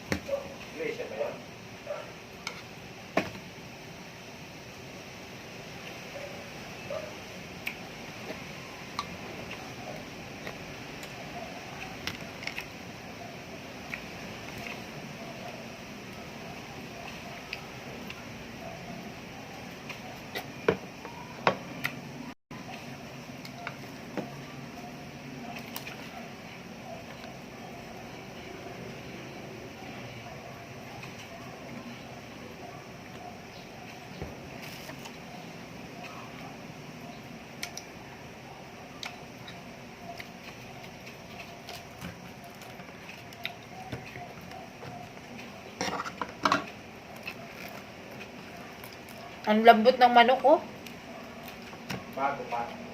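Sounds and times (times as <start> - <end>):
person eating with clicks: 7.6 - 7.8, 8.9 - 11.2, 13.8 - 15.6, 21.8 - 22.0, 37.5 - 38.0, 38.9 - 49.5
chewing fried chicken: 8.9 - 20.6, 22.6 - 28.9, 37.2 - 49.6, 50.6 - 52.8
crackling and rustling: 29.8 - 36.6, 39.0 - 49.6.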